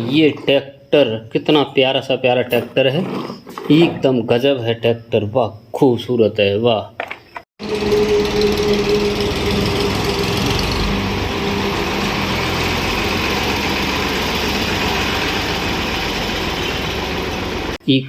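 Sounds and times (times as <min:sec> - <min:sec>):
tractor engine idling: 0:07.6 - 0:17.8.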